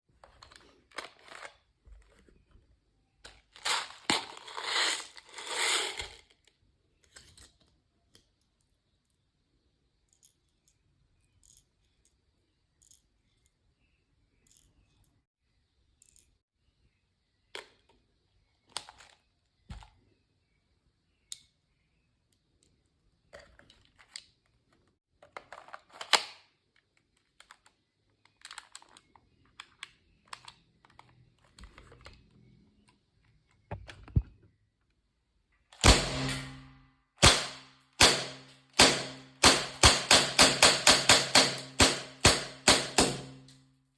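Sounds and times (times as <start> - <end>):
airsoft pistol shot: 35.8 - 43.4.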